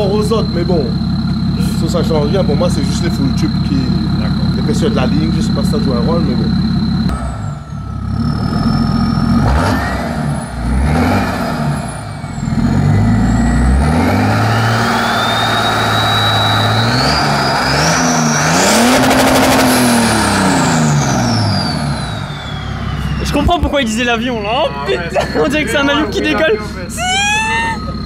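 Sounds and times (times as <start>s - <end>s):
diesel engine revving: 0.0s - 28.0s
turbo whistle: 5.6s - 23.9s, 27.0s - 28.0s.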